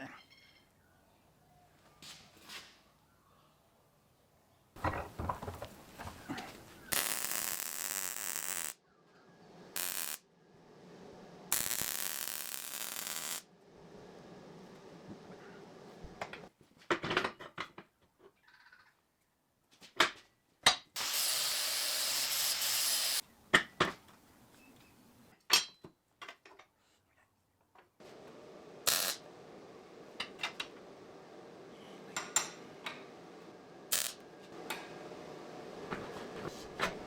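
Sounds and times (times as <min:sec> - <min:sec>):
steady hiss: 0:06.0 - 0:08.8, 0:09.6 - 0:16.5, 0:21.0 - 0:23.2, 0:28.0 - 0:37.0.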